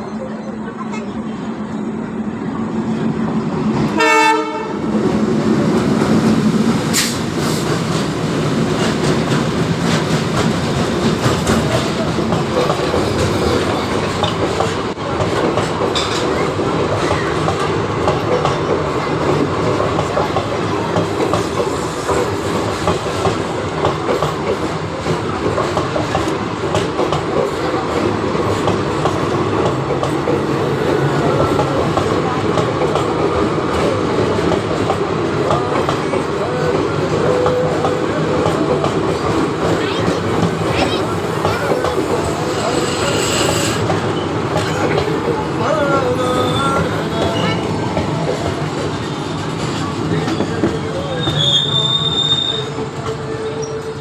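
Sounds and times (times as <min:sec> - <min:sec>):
train rumble and wheel clatter: 0:00.0 - 0:54.0
train horn blast: 0:04.0 - 0:04.9.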